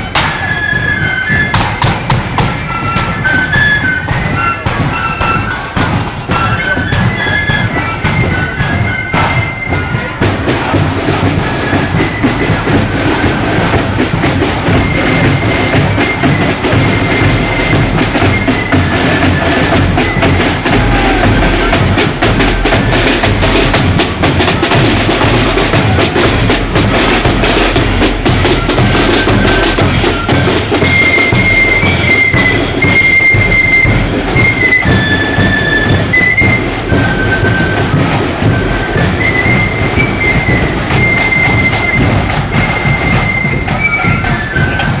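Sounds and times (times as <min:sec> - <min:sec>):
flutes playing marching tune: 0:00.0 - 0:45.0
snare drumming: 0:00.0 - 0:45.0
bass drum: 0:17.7 - 0:30.8.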